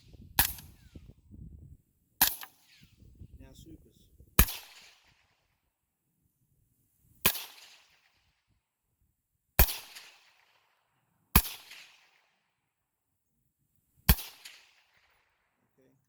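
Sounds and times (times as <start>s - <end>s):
suppressed rifle shots: 0.4s - 1.0s, 2.2s - 3.0s, 4.4s - 5.4s, 7.2s - 8.3s, 9.6s - 10.7s, 11.3s - 12.3s, 14.1s - 15.3s.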